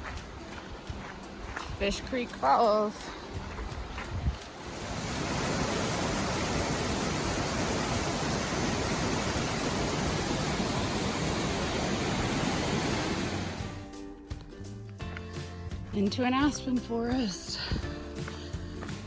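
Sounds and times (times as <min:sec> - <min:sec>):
waterfall rushing: 0:04.6 - 0:13.8.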